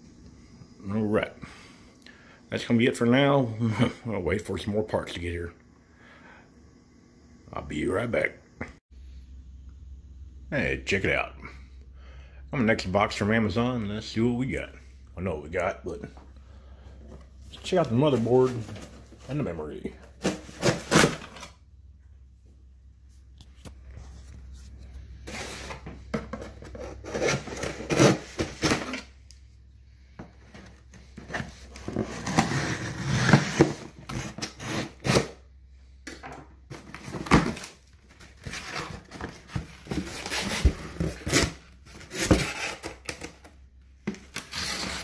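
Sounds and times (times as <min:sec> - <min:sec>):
cardboard rustling and scraping: 0:17.0 - 0:21.5, 0:23.4 - 0:29.1, 0:30.4 - 0:35.3, 0:36.7 - 0:43.5, 0:44.1 - 0:45.0.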